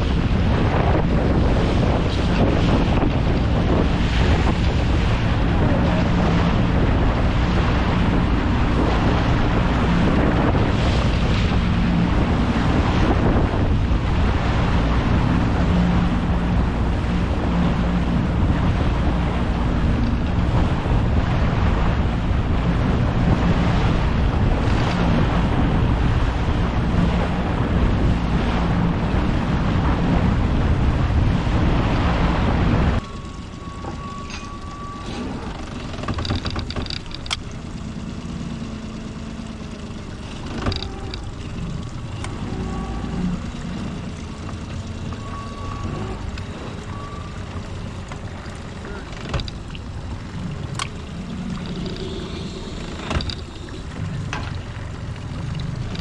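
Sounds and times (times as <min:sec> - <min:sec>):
wind buffeting microphone: 0:00.0 - 0:37.9
boat engine hum: 0:00.0 - 0:56.0.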